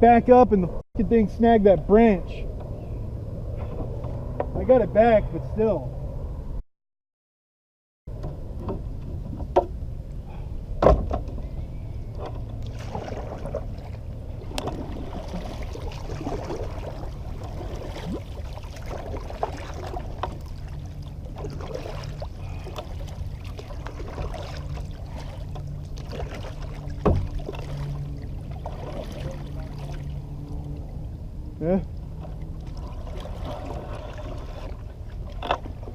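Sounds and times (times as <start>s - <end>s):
knocks on kayak: 10.8s - 11.3s, 27.0s - 27.4s.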